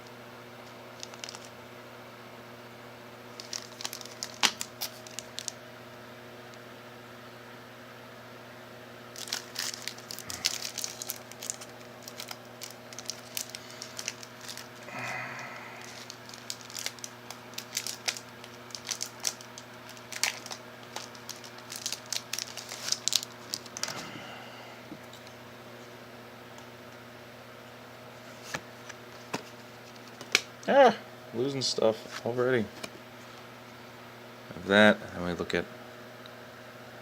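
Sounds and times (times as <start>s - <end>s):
steady low hum: 0.0s - 37.0s
cardboard and packaging crinkling: 1.0s - 1.5s, 3.3s - 5.6s, 9.1s - 24.2s.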